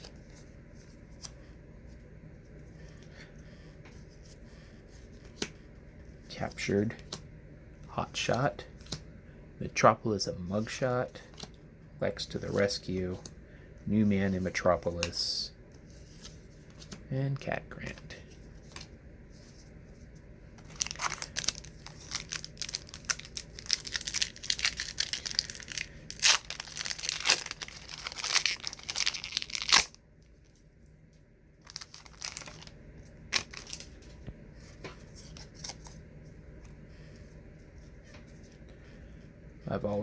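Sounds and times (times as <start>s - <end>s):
wrapper tearing and crinkling: 20.6s - 30.0s, 31.6s - 32.7s, 33.3s - 34.0s.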